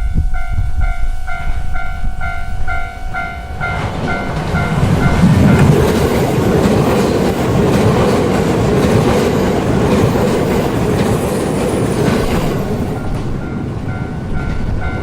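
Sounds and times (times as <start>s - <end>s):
train wheels rumbling on rail: 0.0s - 15.0s
clickety-clack over rail joints: 3.6s - 15.0s.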